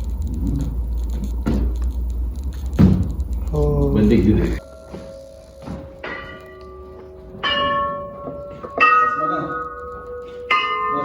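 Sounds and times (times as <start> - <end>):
bells ringing: 4.5 - 11.0.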